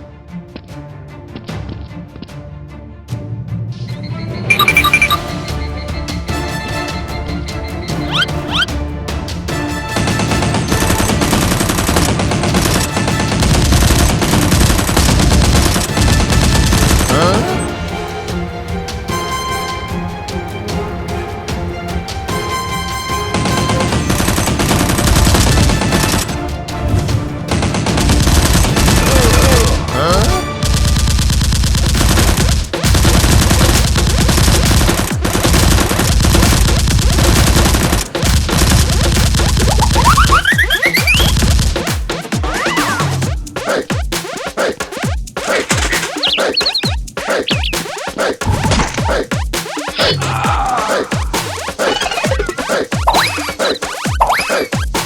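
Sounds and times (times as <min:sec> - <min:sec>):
background music: 0:00.0 - 0:55.0
rapid automatic gunfire: 0:10.0 - 0:17.4, 0:23.3 - 0:26.4, 0:27.5 - 0:29.7, 0:30.6 - 0:50.0
whistling glides: 0:39.9 - 0:41.4, 0:45.4 - 0:48.0, 0:51.3 - 0:54.7.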